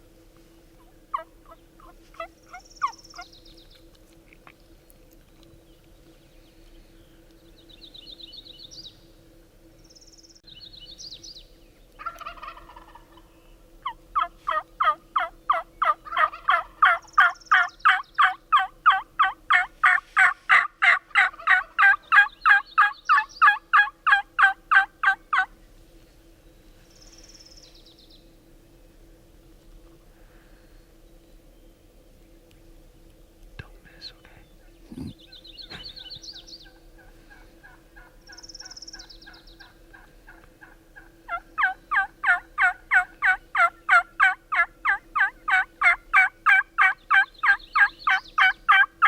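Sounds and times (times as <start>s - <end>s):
songbirds trilling faintly: 0.0s - 49.0s
wild turkey yelping: 0.8s - 3.3s, 12.0s - 13.2s, 13.8s - 25.5s, 36.0s - 49.0s
rattling turkey call: 13.8s - 25.5s, 39.9s - 48.9s.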